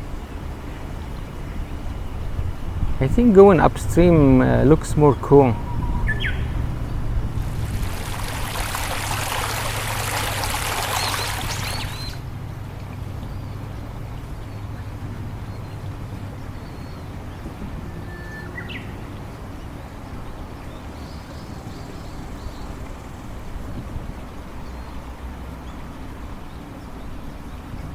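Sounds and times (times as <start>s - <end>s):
bird chirping: 0.0s - 12.2s
low hum: 0.0s - 14.6s
rushing water: 0.0s - 27.9s.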